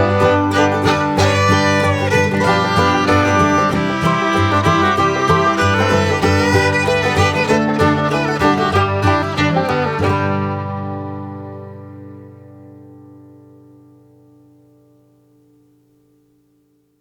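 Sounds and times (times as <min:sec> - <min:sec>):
instrumental background music: 0:00.0 - 0:12.6.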